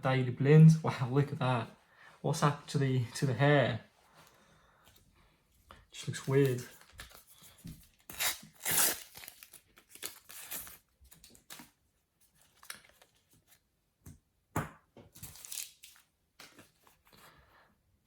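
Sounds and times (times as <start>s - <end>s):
paper packet tearing: 8.0s - 11.7s.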